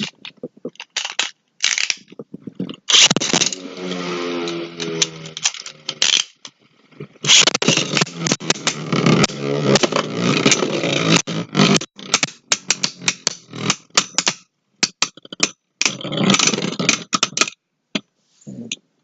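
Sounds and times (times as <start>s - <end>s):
spinning tops grinding and clashing: 0.0s - 2.2s, 2.9s - 6.5s, 7.3s - 15.0s
scraping and sharp clicks: 0.0s - 18.1s.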